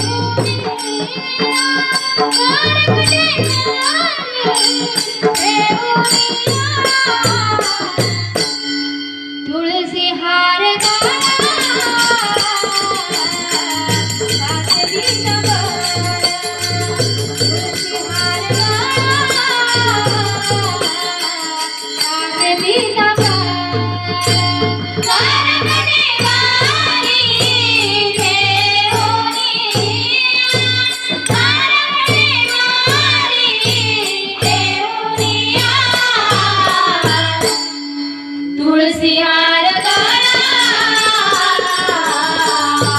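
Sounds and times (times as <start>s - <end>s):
steady drum beat: 0.0s - 8.6s, 10.8s - 37.7s, 39.8s - 42.9s
group singing devotional music: 0.0s - 42.9s
jingling percussion: 0.0s - 42.9s.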